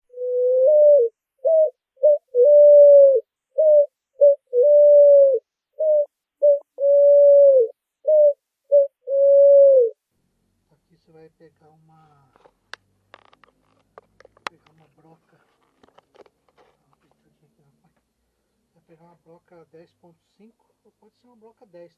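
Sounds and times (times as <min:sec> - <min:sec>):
wooden bird call cooing: 0:00.0 - 0:10.0.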